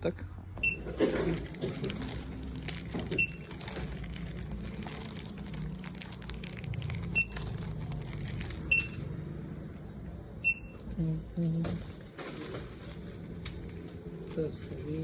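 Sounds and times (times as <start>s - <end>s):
low shop hum: 0.0s - 15.0s
barcode scanner beeping: 0.6s - 0.9s, 3.2s - 3.5s, 7.1s - 7.6s, 8.7s - 9.0s, 10.4s - 10.9s
clatter and rustle of goods: 0.6s - 9.2s, 10.9s - 15.0s.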